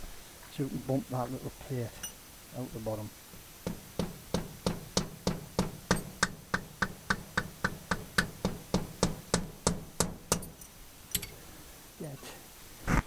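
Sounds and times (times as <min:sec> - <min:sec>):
hammer tapping on a punch: 0:03.6 - 0:10.5.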